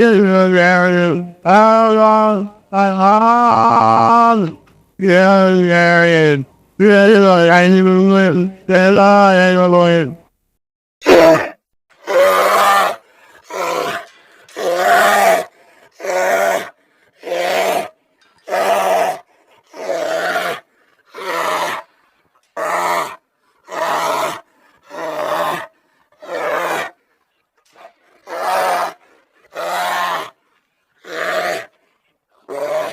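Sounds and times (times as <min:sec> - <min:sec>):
creature calls: 0:18.5 - 0:21.9, 0:27.8 - 0:30.4.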